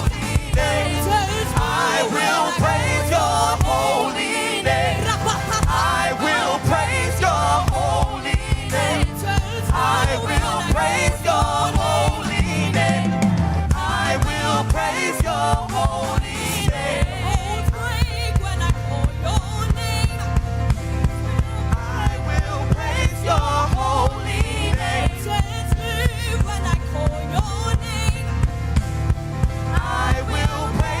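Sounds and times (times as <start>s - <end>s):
voices singing with a band: 0.0s - 28.5s, 29.4s - 31.0s
drum kit beat: 0.0s - 31.0s.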